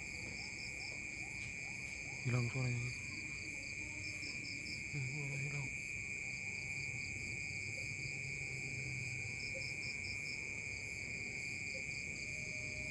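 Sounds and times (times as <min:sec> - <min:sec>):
crickets trilling: 0:00.0 - 0:12.9.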